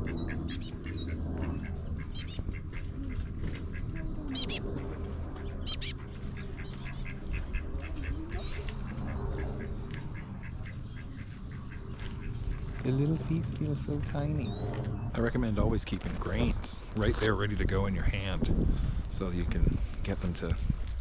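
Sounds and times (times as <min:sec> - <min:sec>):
ducks quacking: 0:00.0 - 0:17.3
small birds chirping: 0:00.0 - 0:17.4.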